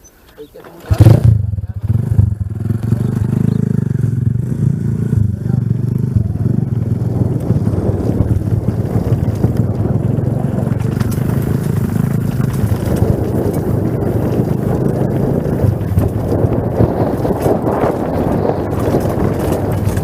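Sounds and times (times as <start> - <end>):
bike tyres and frame rattling: 0.5 - 20.0.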